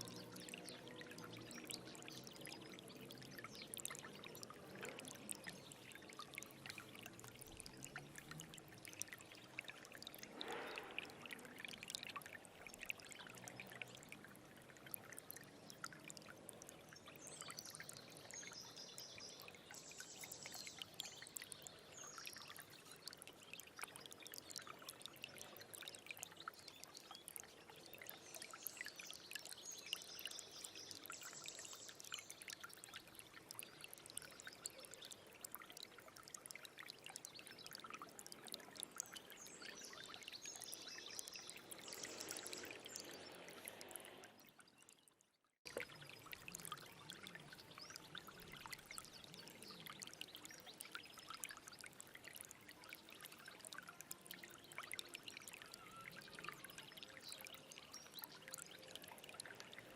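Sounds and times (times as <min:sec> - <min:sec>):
stream water flowing: 0:00.0 - 0:59.9
water splashes and drips: 0:00.0 - 0:59.9.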